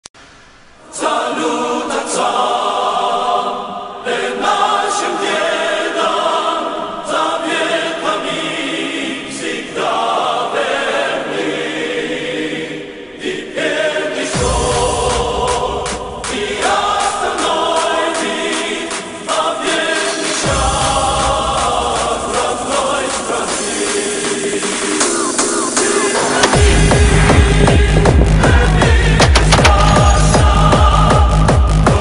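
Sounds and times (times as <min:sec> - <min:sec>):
choir chanting: 0:00.8 - 0:32.0
deep low rumble: 0:26.6 - 0:31.4.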